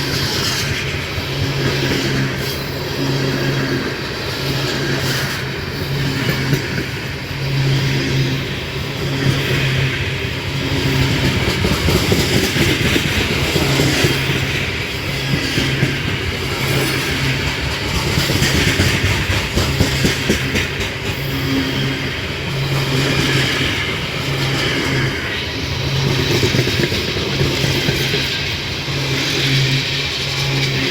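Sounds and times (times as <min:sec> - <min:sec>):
freight train rumble: 0:00.0 - 0:30.9
wheels clattering over rails: 0:09.0 - 0:25.2.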